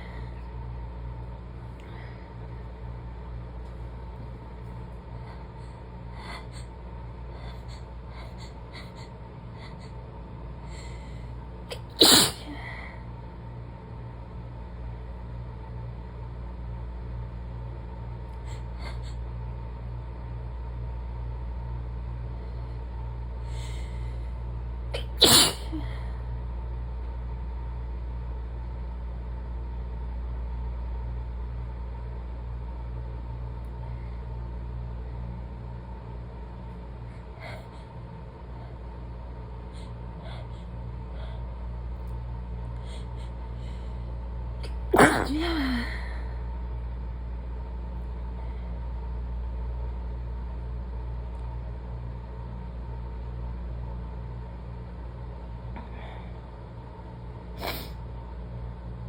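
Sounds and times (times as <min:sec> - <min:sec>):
person sneezing: 0:11.7 - 0:12.8, 0:25.0 - 0:26.0, 0:44.6 - 0:46.1, 0:57.6 - 0:58.0.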